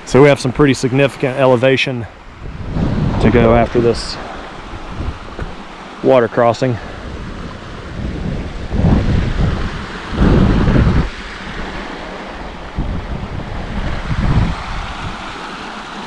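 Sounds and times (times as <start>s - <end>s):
creek rushing: 0.0s - 16.0s
wind buffeting microphone: 2.2s - 5.8s, 6.8s - 16.0s.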